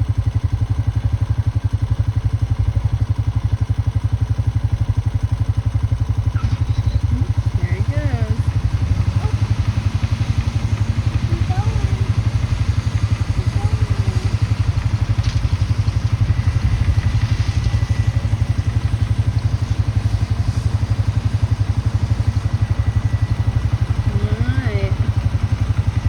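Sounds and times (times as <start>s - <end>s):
atv engine idling: 0.0s - 26.0s.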